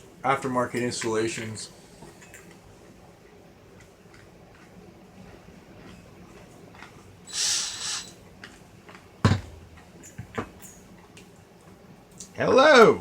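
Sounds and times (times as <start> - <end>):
hissing rustle: 7.3 - 8.2.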